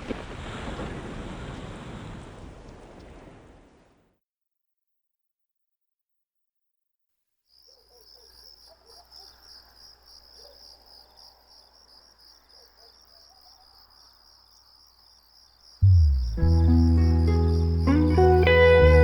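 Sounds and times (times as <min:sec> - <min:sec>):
crickets chirping: 0:07.5 - 0:19.0
faint low hum: 0:15.8 - 0:19.0.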